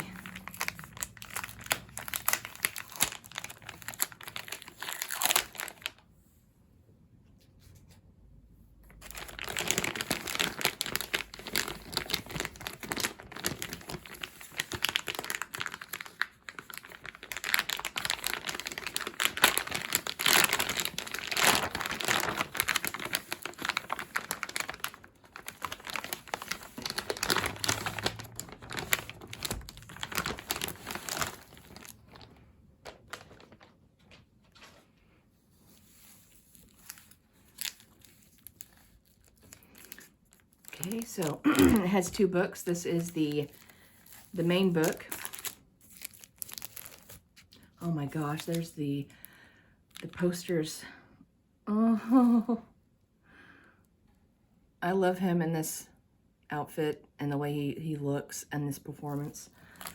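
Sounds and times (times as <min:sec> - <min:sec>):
plastic packaging crinkling: 0:00.0 - 0:06.0, 0:08.9 - 0:34.8, 0:35.6 - 0:49.2, 0:59.1 - 0:59.9.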